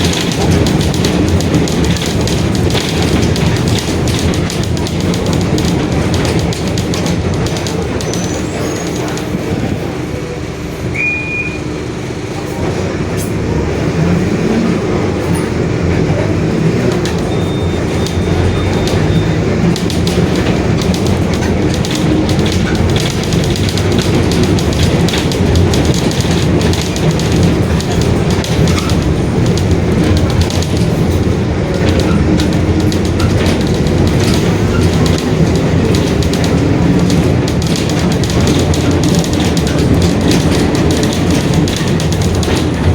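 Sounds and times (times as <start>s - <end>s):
rattles and clicks: 0.0s - 10.0s, 12.4s - 42.9s
bus diesel engine running: 0.0s - 42.9s
drivetrain and body rumble: 0.0s - 42.9s
brief high squeak: 10.9s - 11.8s.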